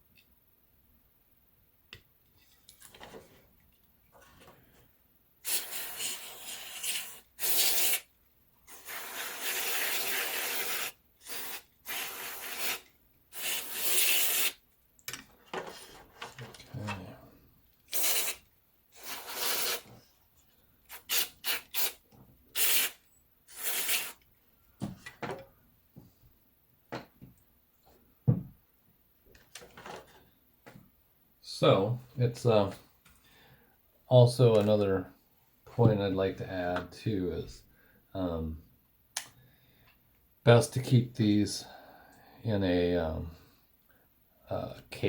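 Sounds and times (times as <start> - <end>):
aerosol spray hissing: 5.4 - 8.1, 8.7 - 14.6, 17.9 - 18.4, 19.0 - 19.9, 20.9 - 24.2.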